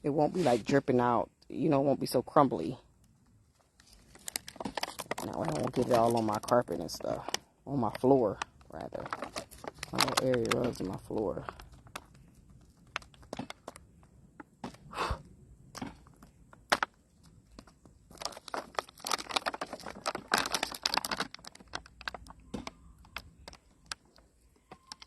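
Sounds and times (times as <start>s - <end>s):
plastic tray crackling: 3.6s - 13.9s, 15.8s - 25.0s.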